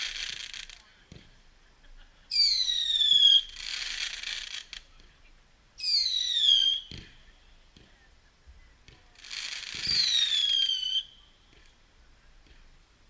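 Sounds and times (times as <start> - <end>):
whistling fireworks: 0.0 - 1.4, 2.3 - 5.0, 5.8 - 8.0, 8.8 - 11.8.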